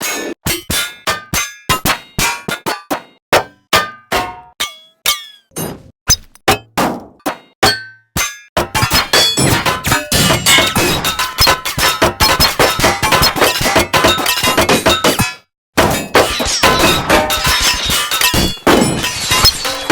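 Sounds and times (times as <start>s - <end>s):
high-pitched metal clangs: 7.6s - 19.9s.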